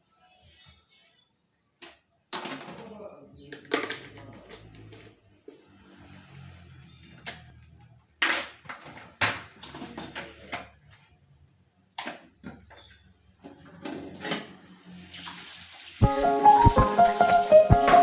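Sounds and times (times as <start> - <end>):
tap water running and splashing: 15.0 - 18.0
music: 16.0 - 18.0.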